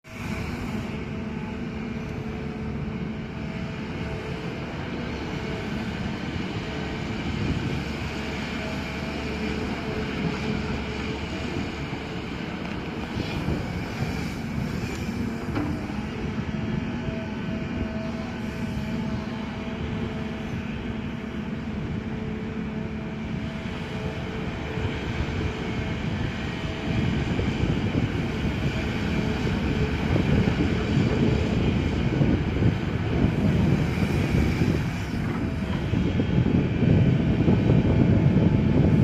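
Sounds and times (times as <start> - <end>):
excavator diesel engine running: 0.1 - 39.0.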